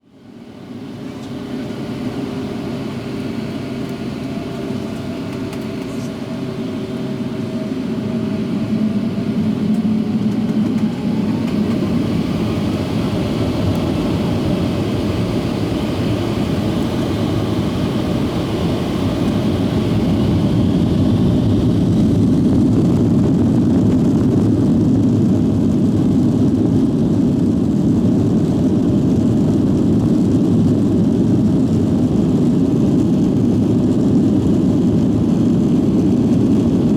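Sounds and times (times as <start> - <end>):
jet engines spooling up: 0.7 - 24.5.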